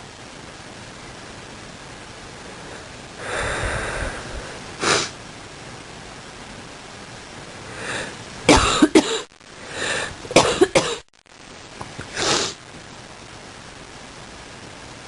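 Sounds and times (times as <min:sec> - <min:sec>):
person coughing: 0:08.5 - 0:09.3, 0:10.4 - 0:11.0.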